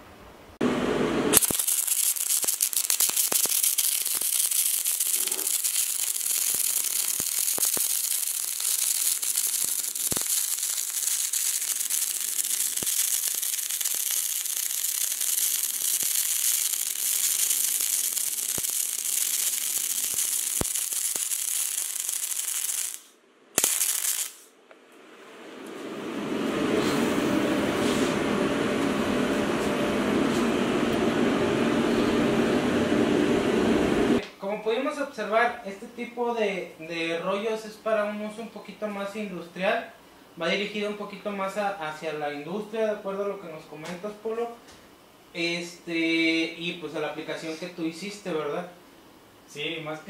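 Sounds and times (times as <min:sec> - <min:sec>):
welding arc crackling hiss: 0:01.3 - 0:24.6.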